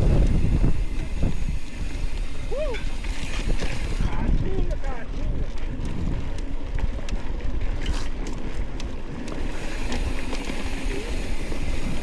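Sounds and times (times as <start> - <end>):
bicycle clicks and rattles: 0.0 - 12.0
bicycle tyre noise on dirt: 0.0 - 12.0
wind rumbling on microphone: 0.0 - 12.0.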